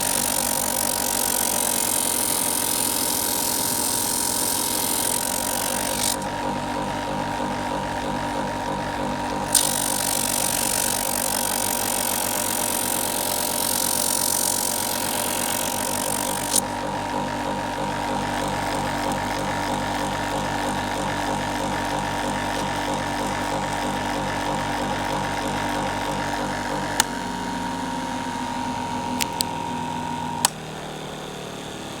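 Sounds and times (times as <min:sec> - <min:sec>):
machine motor hum and whine: 0:00.0 - 0:32.0
machine switch clicks: 0:29.1 - 0:29.6.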